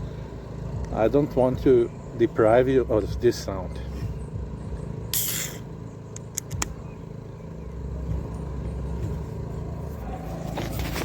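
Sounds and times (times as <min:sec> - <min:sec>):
steady low rumble: 0:00.0 - 0:11.0
hiss of escaping gas: 0:05.1 - 0:05.6
small clicks: 0:06.1 - 0:06.8.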